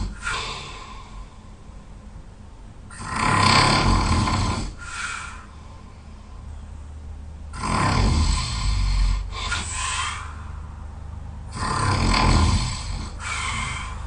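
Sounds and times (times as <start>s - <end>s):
quiet breath: 0.0s - 2.0s, 4.7s - 6.6s, 9.1s - 11.1s, 12.8s - 14.0s
person snoring loudly: 2.9s - 5.2s, 7.5s - 10.5s, 11.5s - 14.0s.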